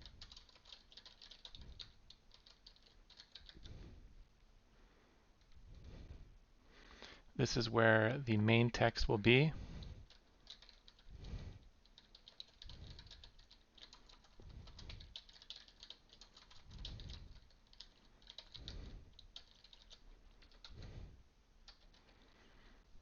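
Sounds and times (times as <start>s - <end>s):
faint keyboard typing: 0.0s - 4.0s, 5.4s - 5.9s, 9.4s - 22.8s.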